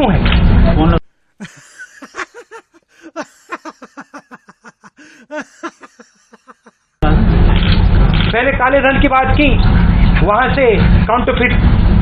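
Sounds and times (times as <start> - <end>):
giggling laugh sound effect: 1.4 - 7.0.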